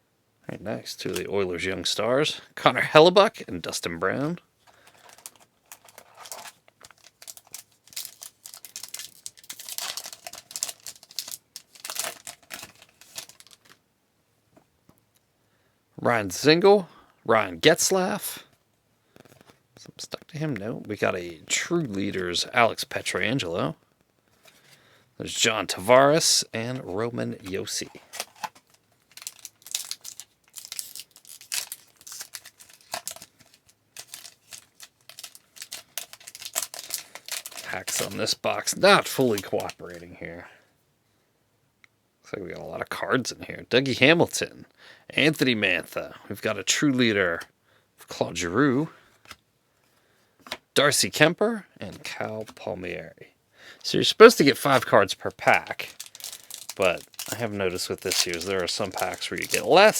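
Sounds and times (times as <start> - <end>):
card pack wrapper tearing and crinkling: 3.6 - 13.8, 27.4 - 40.1, 54.2 - 59.9.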